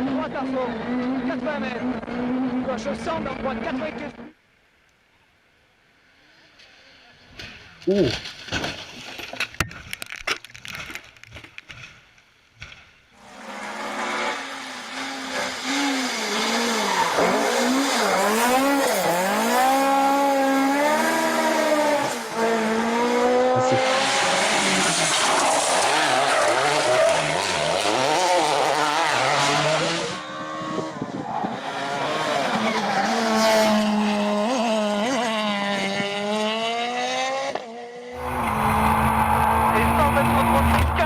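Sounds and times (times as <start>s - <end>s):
rally car engine revving: 0.0s - 4.3s, 13.2s - 41.0s.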